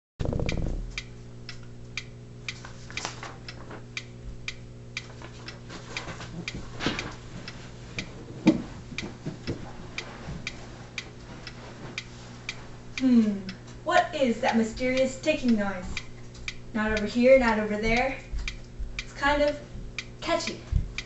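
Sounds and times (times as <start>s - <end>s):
mechanical ticking: 0.2s - 2.5s, 3.5s - 5.6s, 13.5s - 21.0s
low steady hum: 0.2s - 21.0s.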